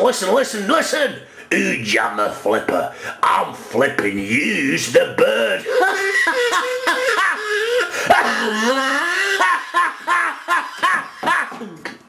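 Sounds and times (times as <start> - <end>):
man laughing: 5.2 - 12.0.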